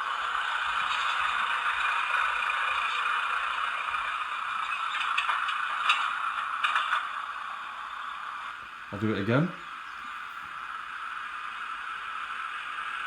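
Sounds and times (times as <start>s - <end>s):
steady hiss-like background: 0.0s - 13.0s
clicks and clatters: 4.6s - 7.3s.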